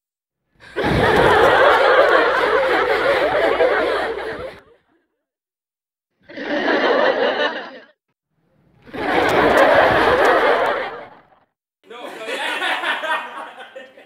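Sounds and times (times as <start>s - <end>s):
laughter sound effects: 0.7s - 4.8s, 6.2s - 8.0s, 8.9s - 11.4s, 12.0s - 14.0s.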